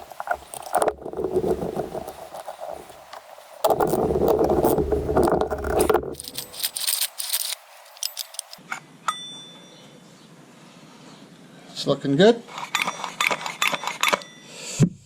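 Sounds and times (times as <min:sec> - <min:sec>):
metal parts rattling and scraping: 0:00.0 - 0:08.6
scattered clicks: 0:00.0 - 0:08.6
metallic clink with ringing: 0:06.2 - 0:09.9.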